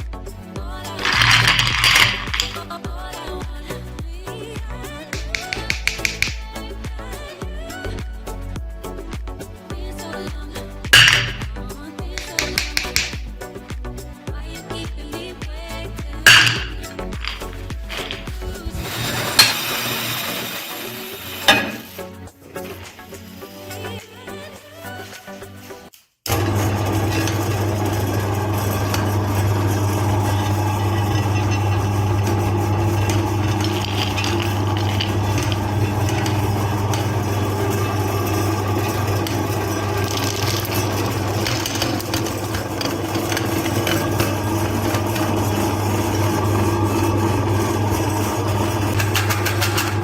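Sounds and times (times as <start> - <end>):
candy crunching in grinder: 0.9 - 2.7, 16.3 - 21.5, 26.3 - 50.0
electric meat grinder motor hum: 16.3 - 21.5, 26.3 - 50.0.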